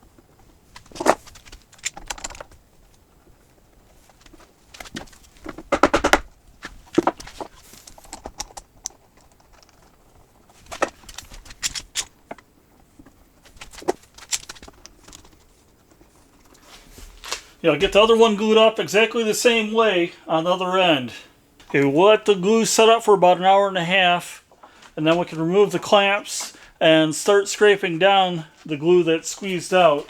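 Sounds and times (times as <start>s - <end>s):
clamps and wood knocking: 5.5s - 6.3s.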